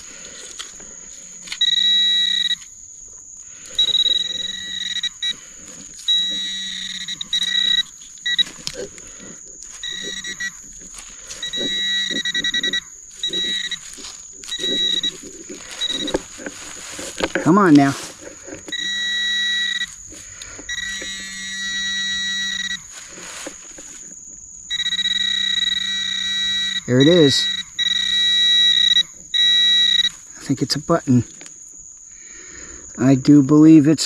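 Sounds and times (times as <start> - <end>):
metal detector pinpointer buzzing: 0.0 - 31.5
thin high tone: 1.4 - 2.7, 3.6 - 18.1, 24.7 - 30.7.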